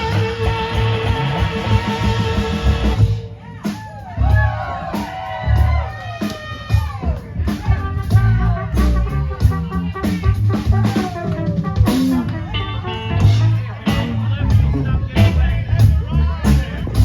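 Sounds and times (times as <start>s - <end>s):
lead guitar with bending notes: 0.0s - 3.3s, 10.9s - 15.4s
bass line: 0.0s - 6.0s, 6.7s - 17.0s
drum kit: 0.0s - 17.0s.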